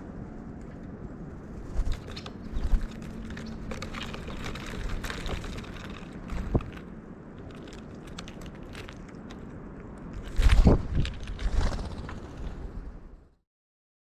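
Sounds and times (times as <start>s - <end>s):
birds pecking at feeder: 1.6s - 9.6s.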